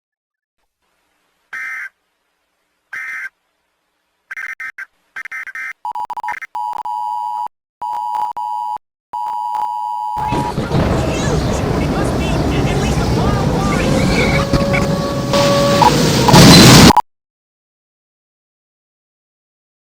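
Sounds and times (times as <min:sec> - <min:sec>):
buzzy digital screeches: 0:13.2 - 0:17.0
steady electronic tone: 0:13.7 - 0:17.0.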